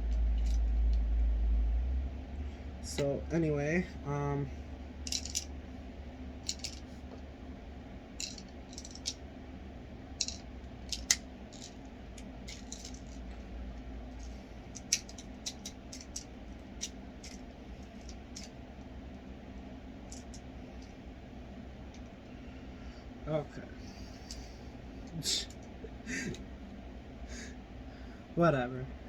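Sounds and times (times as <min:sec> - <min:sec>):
plastic clicks and rattles: 0:06.5 - 0:06.8.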